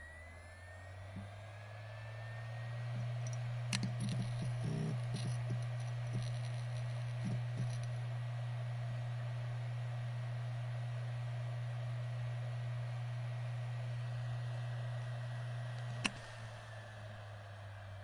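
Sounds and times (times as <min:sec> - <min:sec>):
hard drive motor hum: 0:00.0 - 0:18.0
hard drive clicks: 0:03.0 - 0:08.0, 0:15.8 - 0:16.4.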